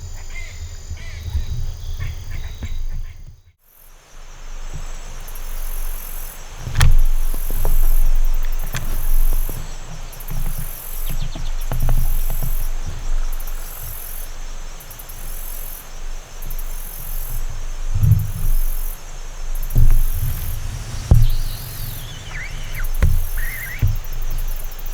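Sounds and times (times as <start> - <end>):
insects chirping: 3.7 - 24.9
low uneven rumble: 19.3 - 24.9.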